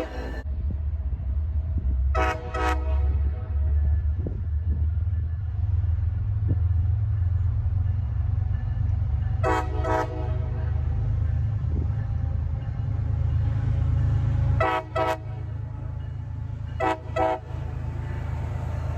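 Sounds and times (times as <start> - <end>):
train horn blasts: 2.1 - 4.0, 9.3 - 10.9, 14.6 - 15.9, 16.7 - 18.2.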